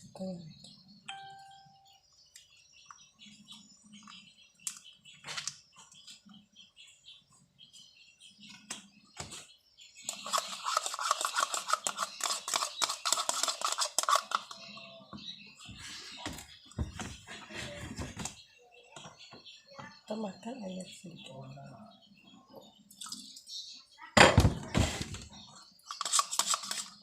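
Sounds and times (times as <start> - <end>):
spoon scraping a glass container: 10.2 - 14.5.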